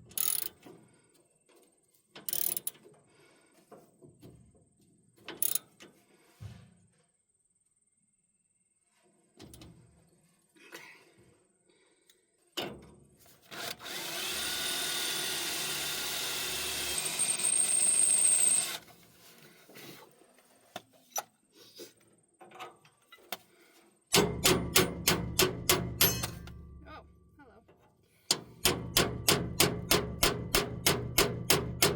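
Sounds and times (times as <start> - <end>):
metal parts clicking and knocking: 0.1 - 0.6, 2.2 - 2.8, 5.3 - 5.8, 25.3 - 26.6
handheld power tool running: 13.5 - 18.9.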